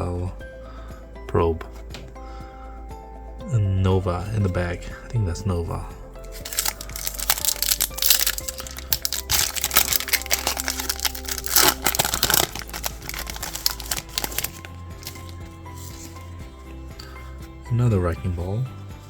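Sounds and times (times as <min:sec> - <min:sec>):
background music: 0:00.0 - 0:19.0
foil wrapper crinkling: 0:06.3 - 0:16.3.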